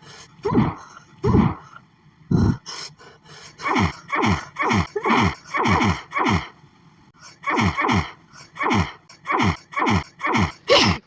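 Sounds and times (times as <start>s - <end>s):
woman sneezing: 9.8s - 11.0s.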